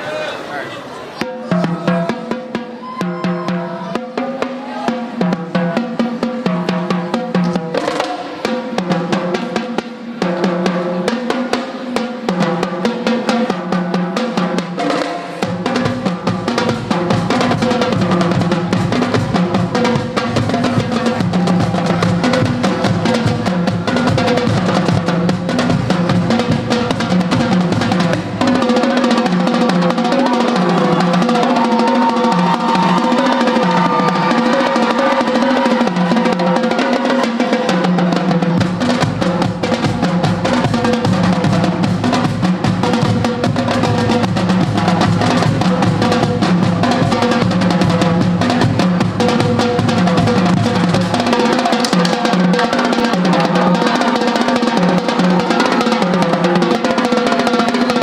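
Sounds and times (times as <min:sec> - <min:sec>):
bass drums: 0:15.4 - 0:36.7, 0:37.8 - 0:54.0.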